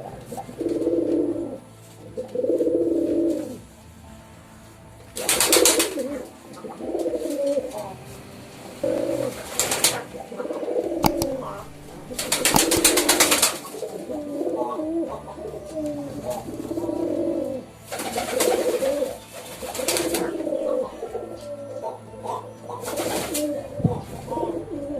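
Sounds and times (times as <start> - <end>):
pigeons cooing: 8.8 - 24.9.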